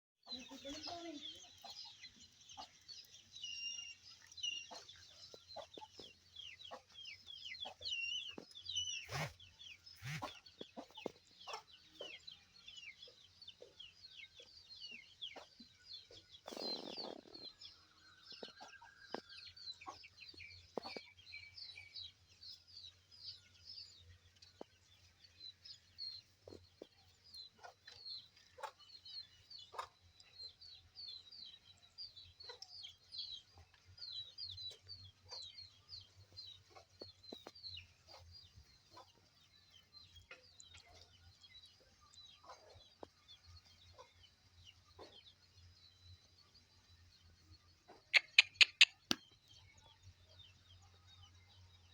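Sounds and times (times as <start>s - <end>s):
birds chirping: 0.2s - 51.9s.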